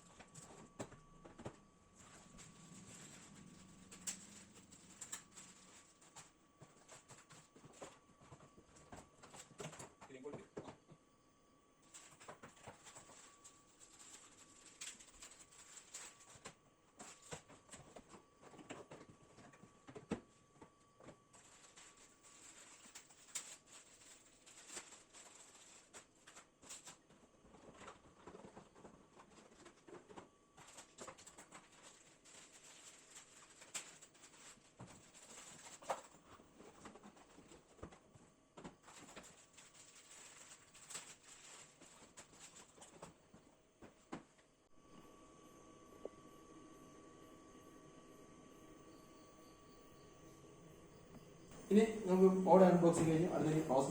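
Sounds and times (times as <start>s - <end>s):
rustling of box and packaging: 0.0s - 10.8s, 11.8s - 44.5s, 45.9s - 53.9s.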